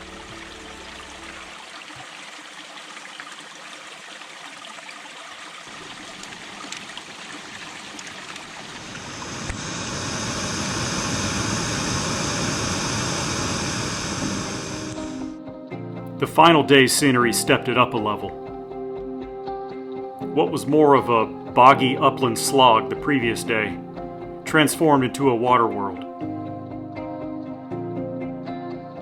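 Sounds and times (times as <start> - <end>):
stream water rushing: 0.0 - 15.4.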